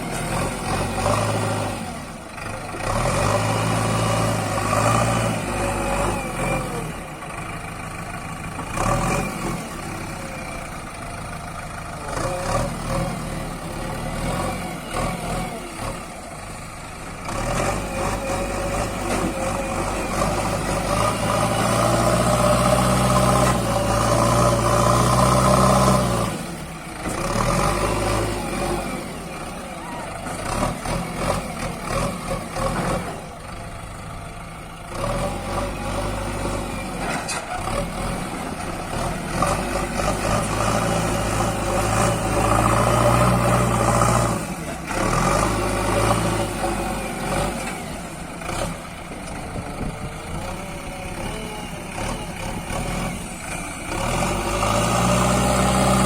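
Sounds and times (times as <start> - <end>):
heavy diesel engine running: 0.0 - 56.0.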